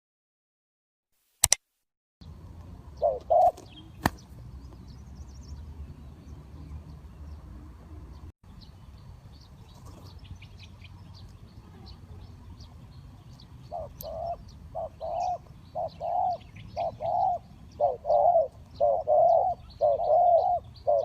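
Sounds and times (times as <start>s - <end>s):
sharp click: 1.4s - 1.6s
small birds chirping: 2.2s - 21.0s
dove cooing: 3.0s - 4.0s, 13.6s - 21.0s.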